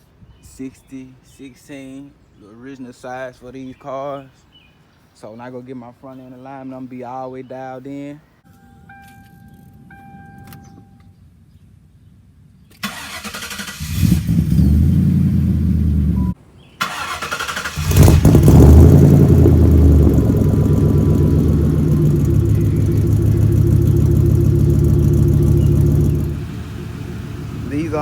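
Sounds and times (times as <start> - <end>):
car engine revving: 12.8 - 28.0.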